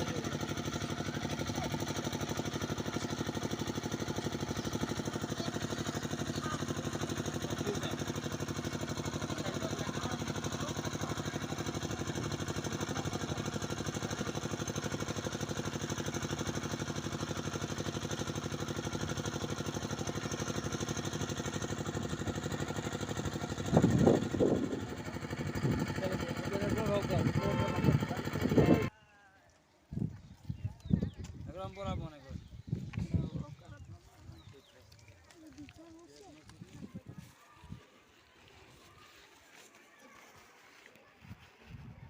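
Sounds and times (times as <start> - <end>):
motor throbbing steadily: 0.0 - 28.9.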